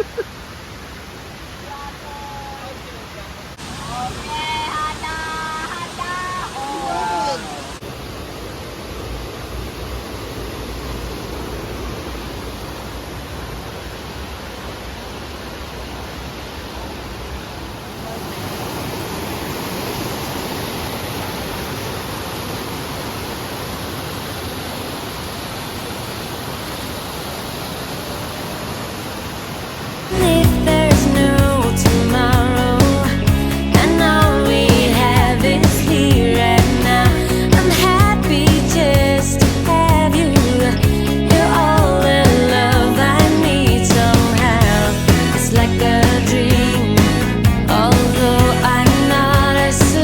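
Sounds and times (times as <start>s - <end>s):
waterfall rushing: 0.0s - 50.0s
music: 30.2s - 50.0s.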